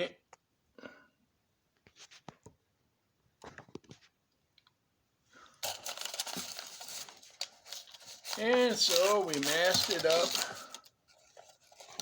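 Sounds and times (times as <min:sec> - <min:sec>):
crinkling tearing rustle: 0:05.6 - 0:12.0.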